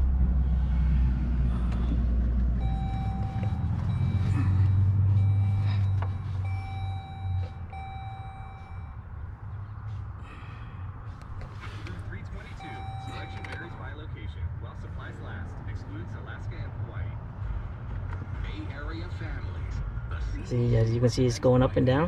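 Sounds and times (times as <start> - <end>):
low vehicle hum: 0.0 - 22.0
electronic chime tone: 2.6 - 8.9.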